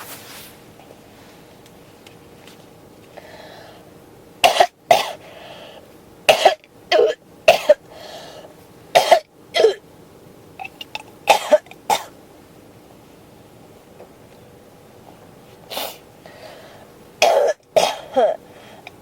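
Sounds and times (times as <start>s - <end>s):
person coughing: 4.4s - 5.2s, 6.3s - 7.8s, 9.0s - 9.8s, 11.3s - 12.1s, 17.2s - 18.4s.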